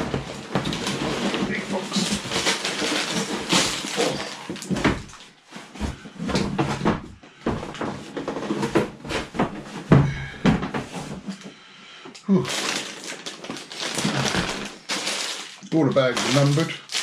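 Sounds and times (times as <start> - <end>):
knocks and thumps: 0.0 - 11.3
plastic bags rustling: 0.0 - 11.5, 12.3 - 17.0.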